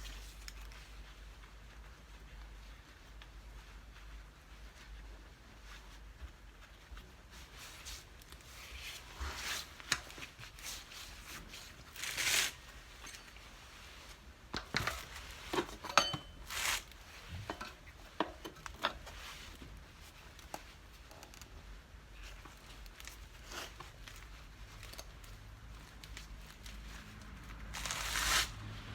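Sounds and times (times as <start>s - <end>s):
tools scraping rubber: 8.9s - 13.4s, 15.3s - 19.1s, 27.8s - 28.6s.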